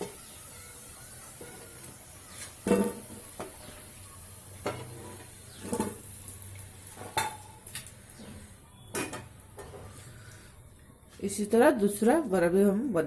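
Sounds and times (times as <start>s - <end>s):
fritters sizzling in oil: 0.0s - 10.8s
metal utensil scraping a pan: 1.4s - 3.8s, 4.6s - 6.1s.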